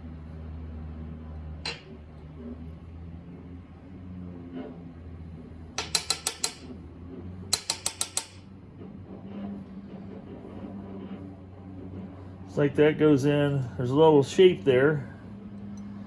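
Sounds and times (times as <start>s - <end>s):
steady low hum: 0.0s - 16.0s
ratchet clicking: 5.8s - 6.7s, 7.5s - 8.4s.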